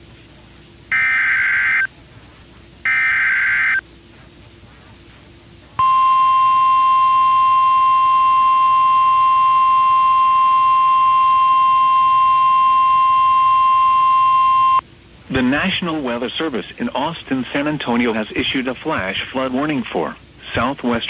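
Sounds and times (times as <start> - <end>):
steady alarm tone: 0.9 - 1.9, 2.8 - 3.8, 5.8 - 14.8
warbling data burst screech: 0.9 - 1.9, 2.9 - 3.8.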